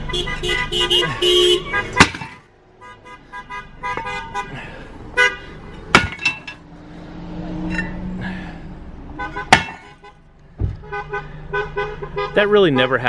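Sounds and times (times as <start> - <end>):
car horns honking: 0.0 - 6.6, 9.1 - 13.0
passing car engine: 4.2 - 9.5.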